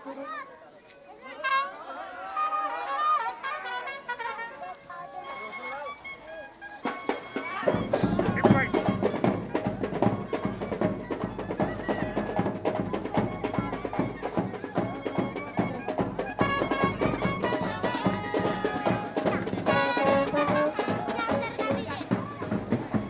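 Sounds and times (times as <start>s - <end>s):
crowd voices: 0.0s - 23.0s
reedy wind melody: 5.2s - 23.0s
drums beating steadily: 6.0s - 23.0s.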